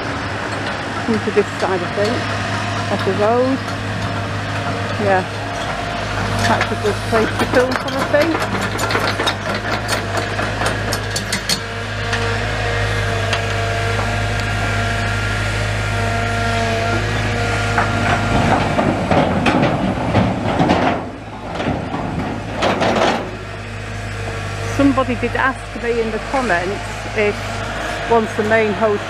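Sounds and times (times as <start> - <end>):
diesel machinery droning: 0.0 - 29.0
rubble clanking and knocking: 0.1 - 15.1, 15.9 - 29.0.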